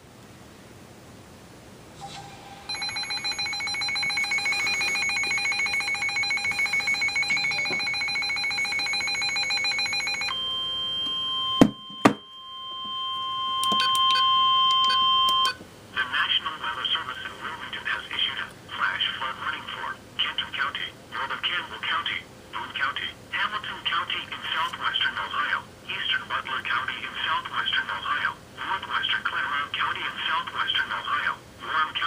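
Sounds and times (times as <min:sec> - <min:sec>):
steady high warning tone: 0:02.0 - 0:15.6
rapidly pulsing electronic beep: 0:02.6 - 0:15.6.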